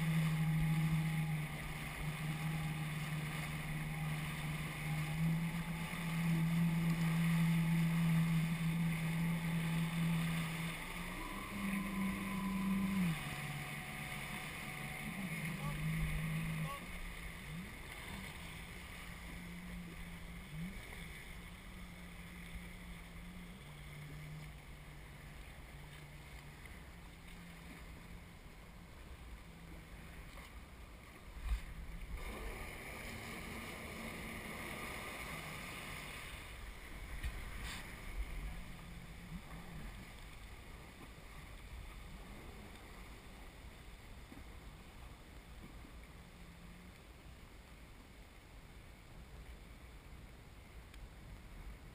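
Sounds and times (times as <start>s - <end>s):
jet ski engine running: 0.0s - 51.9s
wind and water rushing: 0.0s - 51.9s.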